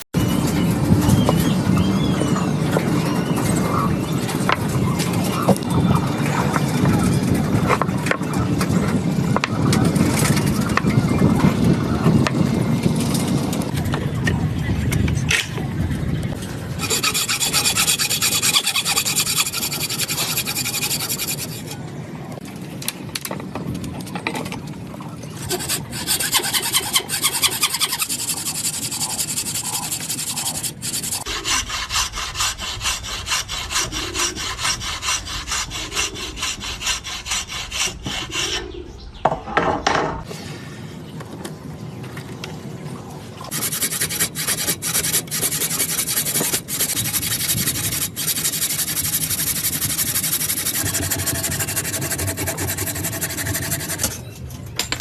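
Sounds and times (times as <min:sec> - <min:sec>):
tool rasping against wood: 0:16.8 - 0:21.8, 0:25.4 - 0:38.7, 0:43.5 - 0:54.2.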